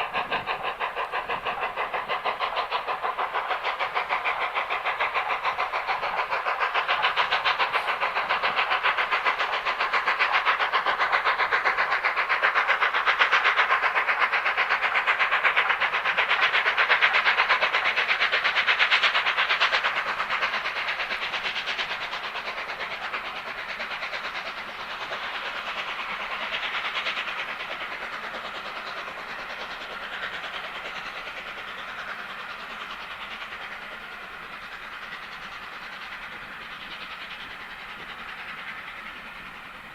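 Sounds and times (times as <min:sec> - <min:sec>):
steam train passing at speed: 0:00.0 - 0:39.9.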